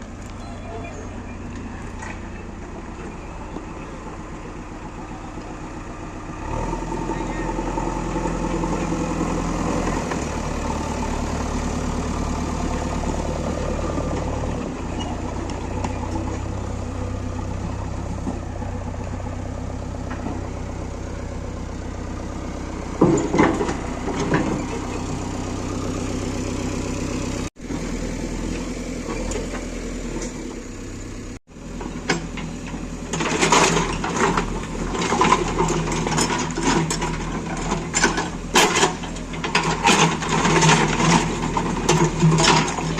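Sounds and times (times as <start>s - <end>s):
diesel engine running: 0.0s - 42.9s
metallic clanking and rattling: 22.8s - 25.3s, 31.8s - 42.9s.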